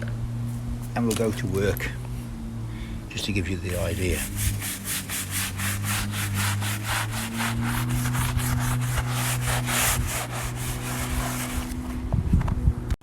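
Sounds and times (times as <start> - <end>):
steady low hum: 0.0 - 13.0
hand scrubbing floor tile: 3.7 - 12.0.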